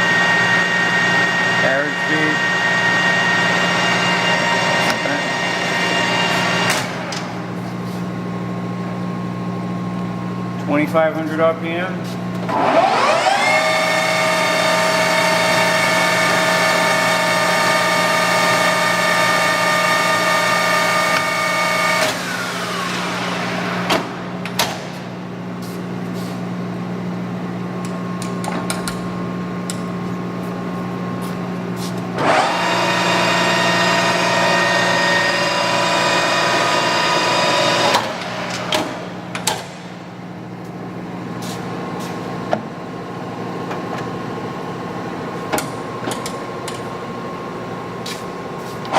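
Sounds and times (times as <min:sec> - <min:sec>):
lathe gear whine: 0:00.0 - 0:07.6, 0:12.4 - 0:24.6, 0:27.0 - 0:40.5.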